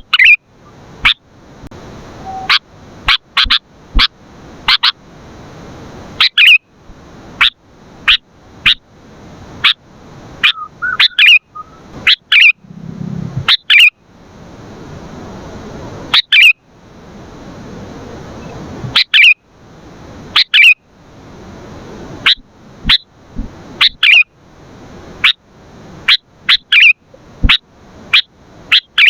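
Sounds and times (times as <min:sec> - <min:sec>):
bulbul calling: 0:00.0 - 0:00.4, 0:06.2 - 0:06.6, 0:10.4 - 0:13.9, 0:16.1 - 0:16.6, 0:18.4 - 0:19.4, 0:20.4 - 0:20.8, 0:23.8 - 0:24.2, 0:26.1 - 0:29.0.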